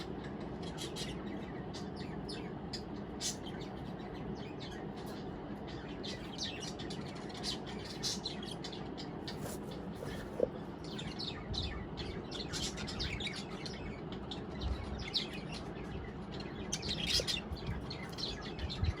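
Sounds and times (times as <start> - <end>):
budgerigars chirping: 5.7 - 14.0.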